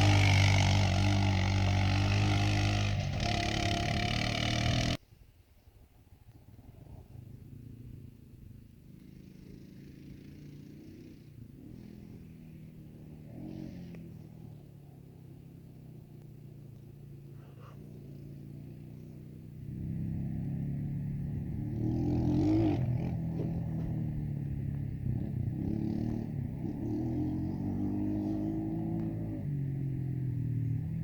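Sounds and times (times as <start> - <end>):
engine revving: 0.0 - 5.0, 9.0 - 14.6, 19.0 - 31.0.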